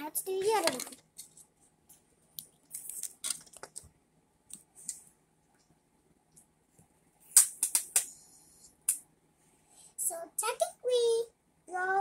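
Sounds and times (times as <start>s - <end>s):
paper crinkling: 2.6s - 3.9s.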